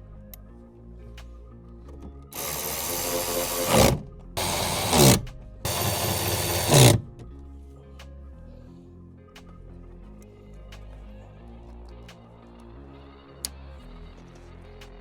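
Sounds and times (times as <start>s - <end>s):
background music: 0.0s - 15.0s
power drill running: 2.4s - 7.1s.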